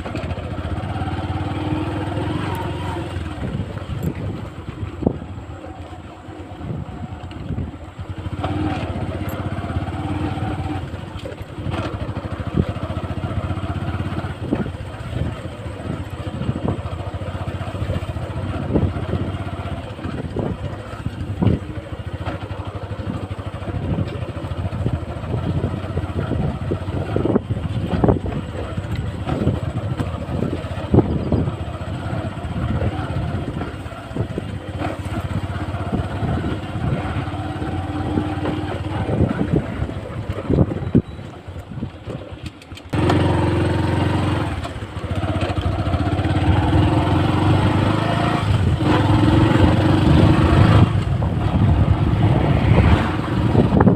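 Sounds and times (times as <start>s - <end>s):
motorcycle engine running: 0.0s - 53.9s.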